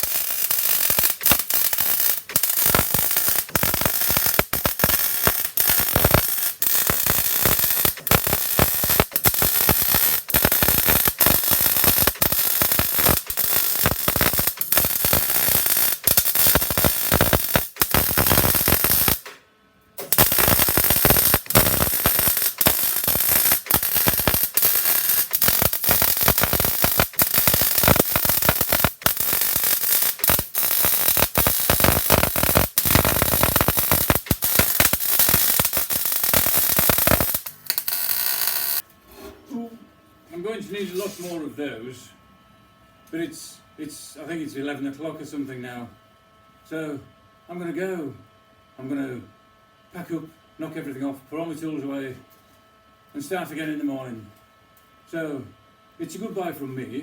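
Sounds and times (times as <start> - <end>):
welding arc crackling and sizzling: 0.0 - 19.4, 20.0 - 38.8.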